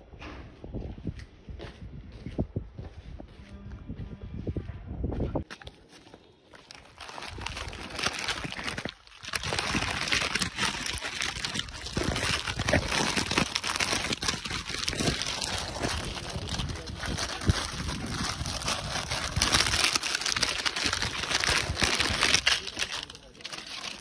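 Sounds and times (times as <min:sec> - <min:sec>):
dense crackling and rustling: 0:06.5 - 0:24.0.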